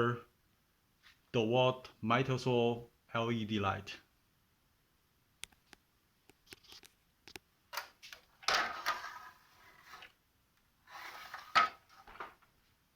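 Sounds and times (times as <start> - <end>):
small sharp clicks and knocks: 5.4 - 8.6
scraping and rustling: 8.0 - 10.2, 10.8 - 12.5.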